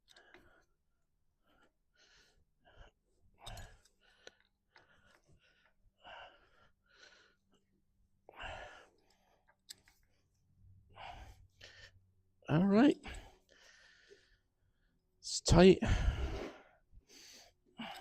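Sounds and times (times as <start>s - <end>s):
person straining breaths and sighs: 15.8s - 18.0s.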